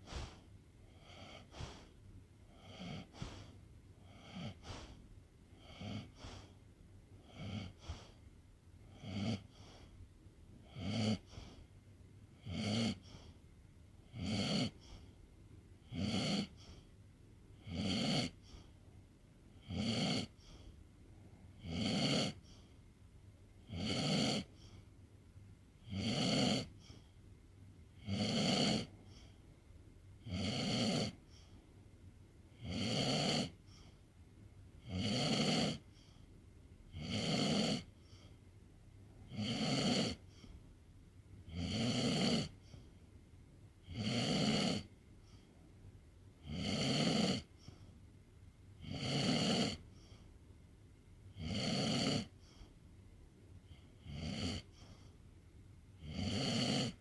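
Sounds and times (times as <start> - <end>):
pet snoring: 0.0 - 6.6, 7.2 - 8.2, 8.8 - 9.9, 10.6 - 11.7, 12.3 - 13.4, 14.0 - 15.1, 15.8 - 16.8, 17.6 - 18.7, 19.5 - 20.7, 21.6 - 22.7, 23.6 - 24.8, 25.8 - 27.1, 28.0 - 29.3, 30.2 - 31.5, 32.5 - 34.0, 34.8 - 36.2, 36.9 - 38.3, 39.2 - 40.5, 41.5 - 42.9, 43.8 - 45.4, 46.4 - 47.9, 48.8 - 50.2, 51.3 - 52.7, 53.7 - 55.1, 56.0 - 57.0.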